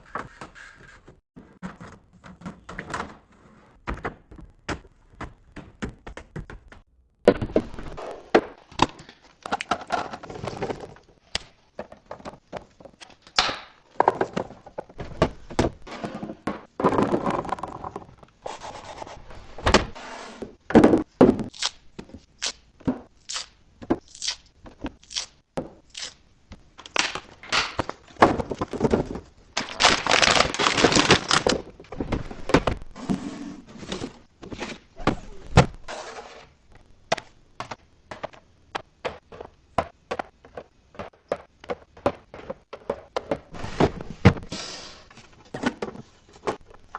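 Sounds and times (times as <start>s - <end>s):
containers thunking and knocking: 11.7s - 18.2s, 20.6s - 21.5s, 27.7s - 32.9s, 37.1s - 44.5s
packaging rustling and crinkling: 29.6s - 31.7s.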